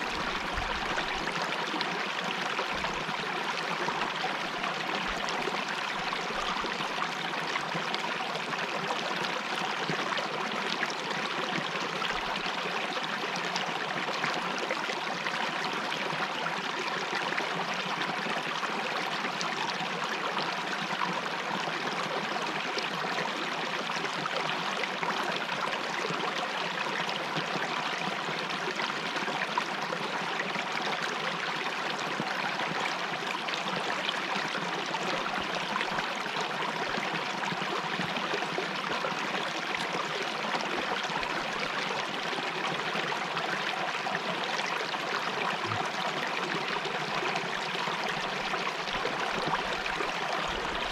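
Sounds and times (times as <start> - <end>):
river flowing over rocks: 44.5 - 50.9.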